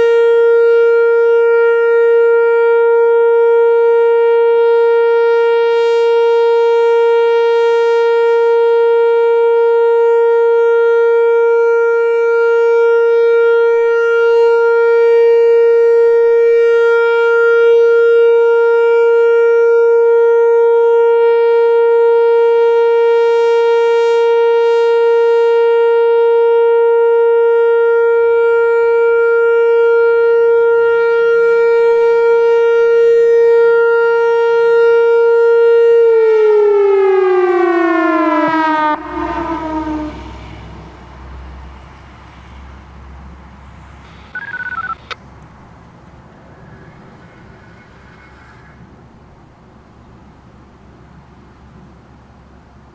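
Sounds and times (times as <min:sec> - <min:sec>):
warning siren steady tone: 0:00.0 - 0:41.8, 0:42.6 - 0:49.2.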